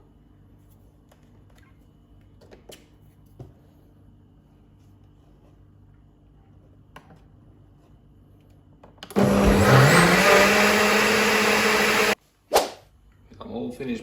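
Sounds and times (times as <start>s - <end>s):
blender motor running: 9.1s - 12.2s.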